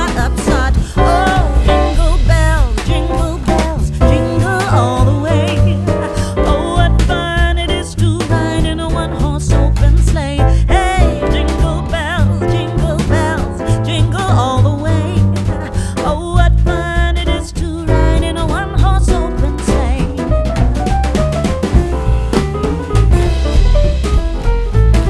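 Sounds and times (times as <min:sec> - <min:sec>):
voice singing with vibrato: 0:00.0 - 0:09.2
bass: 0:00.0 - 0:25.0
drums: 0:00.0 - 0:25.0.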